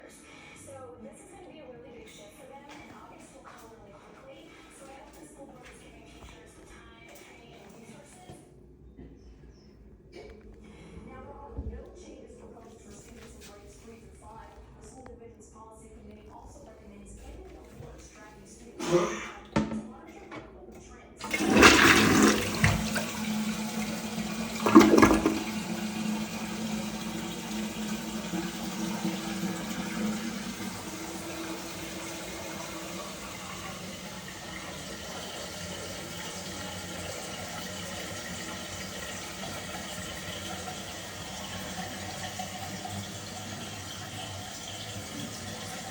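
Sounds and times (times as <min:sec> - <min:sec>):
cistern refilling with running water: 0:21.2 - 0:45.9
toilet flushing: 0:21.2 - 0:45.9.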